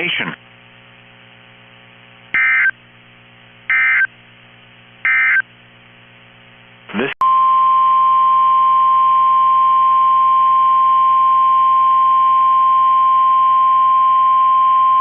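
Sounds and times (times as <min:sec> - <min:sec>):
radio hiss and hum: 0:00.0 - 0:07.2
loud steady high alarm tone: 0:02.4 - 0:02.7, 0:03.7 - 0:04.1, 0:05.1 - 0:05.4.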